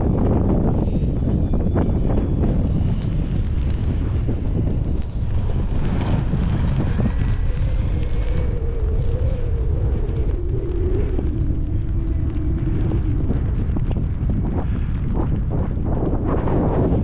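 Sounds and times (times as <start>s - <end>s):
model plane electric motor whine: 0.0s - 9.0s
wind buffeting microphone: 0.0s - 17.0s.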